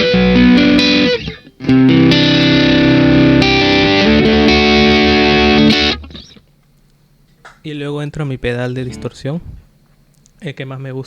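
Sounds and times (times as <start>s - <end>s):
overdriven electric guitar chords: 0.0s - 6.5s.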